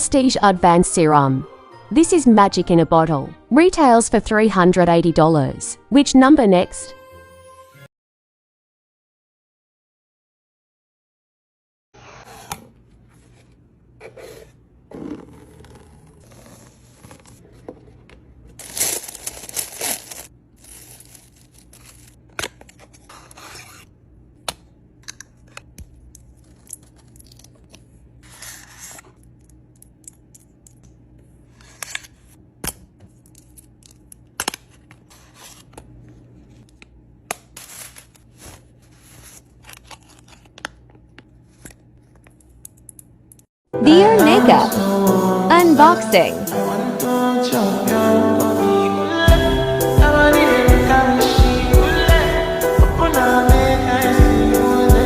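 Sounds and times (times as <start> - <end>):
paper tearing and rustling: 14.0 - 17.7, 18.6 - 23.9, 28.2 - 29.2, 34.4 - 35.8, 37.4 - 40.8.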